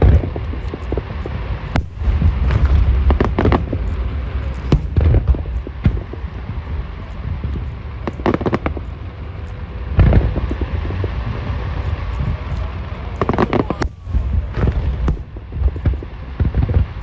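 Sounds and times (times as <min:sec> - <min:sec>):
heavy firework boom: 0:00.0 - 0:08.9, 0:13.2 - 0:17.0
fireworks cracking and popping: 0:00.0 - 0:17.0
low rumble of bursts: 0:00.0 - 0:17.0.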